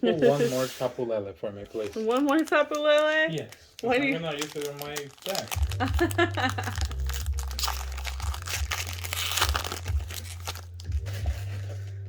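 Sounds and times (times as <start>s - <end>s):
foil wrapper crinkling and tearing: 1.7s - 11.6s.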